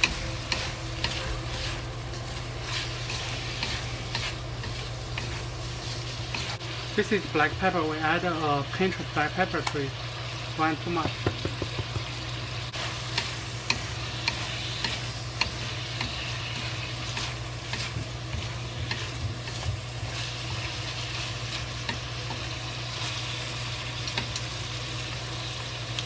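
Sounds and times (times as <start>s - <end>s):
spatula scraping a pan: 0.0s - 6.6s, 12.7s - 24.4s
meat sizzling in hot oil: 0.0s - 26.0s.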